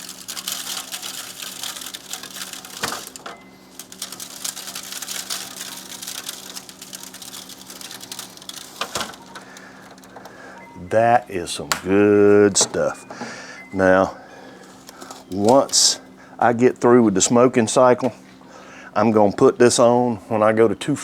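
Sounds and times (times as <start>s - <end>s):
seasoning rattling in shaker bottle: 0.0s - 10.1s.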